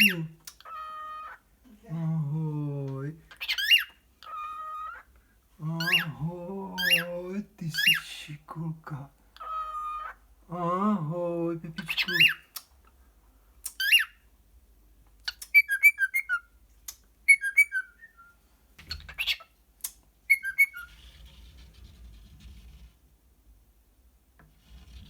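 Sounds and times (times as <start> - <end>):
cockatiel calling and whistling: 0.0 - 1.4, 3.3 - 5.1, 9.4 - 10.2, 13.8 - 14.2, 15.3 - 16.5, 17.3 - 18.4, 19.1 - 19.4, 20.3 - 20.9.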